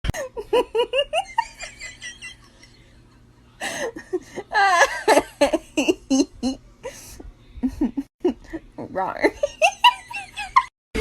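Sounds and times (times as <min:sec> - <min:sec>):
person laughing: 0:03.6 - 0:08.6.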